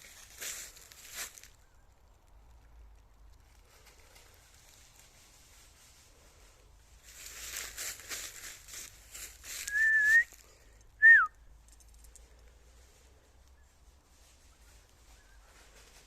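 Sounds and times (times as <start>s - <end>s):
footsteps in dry leaves: 0.0s - 1.8s, 3.4s - 10.7s, 12.8s - 16.0s
person whistling for dog: 9.6s - 10.3s, 11.0s - 11.3s.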